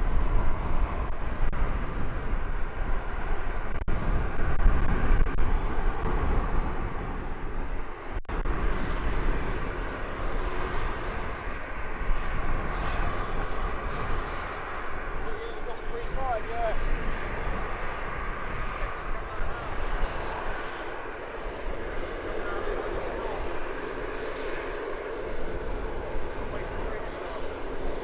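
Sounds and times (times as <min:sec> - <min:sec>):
aircraft engines whining: 0:00.0 - 0:28.0
wind buffeting microphone: 0:00.0 - 0:28.0.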